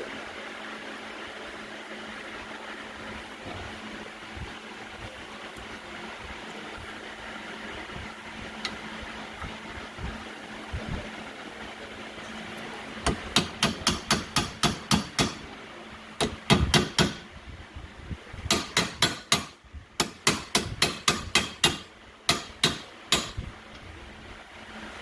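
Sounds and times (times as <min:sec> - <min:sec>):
hammer tapping a pin: 0:13.1 - 0:15.4, 0:16.2 - 0:17.2, 0:18.5 - 0:23.4.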